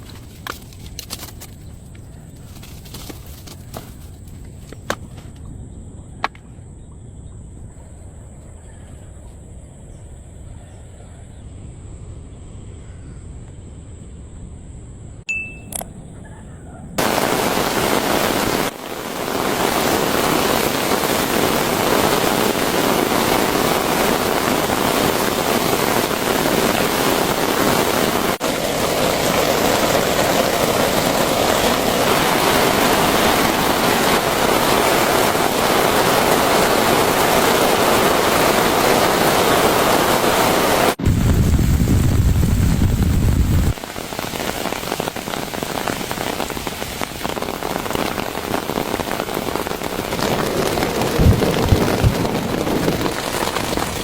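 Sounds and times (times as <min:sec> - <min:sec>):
heavy rain hissing: 0:17.0 - 0:54.0.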